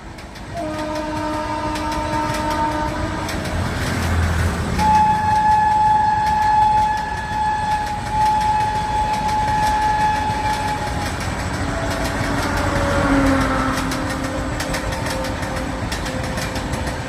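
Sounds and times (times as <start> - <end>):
train wheels clacking on rails: 0.0 - 17.0
train horn: 0.4 - 17.0.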